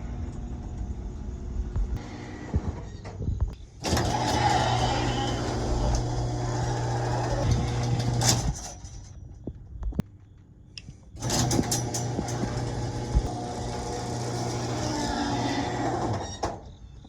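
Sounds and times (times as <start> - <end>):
garage door opener motor humming: 2.0 - 3.1, 3.8 - 8.8, 11.2 - 16.6.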